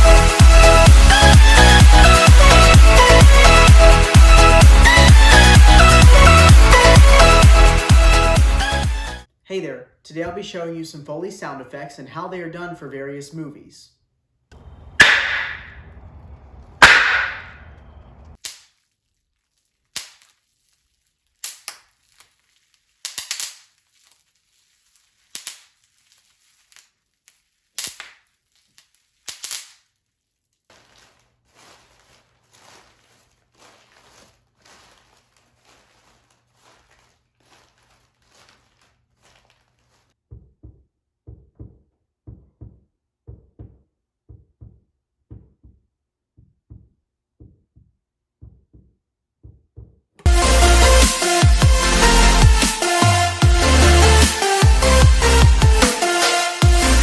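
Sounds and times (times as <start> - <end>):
loud sharp cracks: 15.0 - 16.0, 16.8 - 18.8, 23.0 - 23.8, 27.8 - 28.3, 29.3 - 29.8.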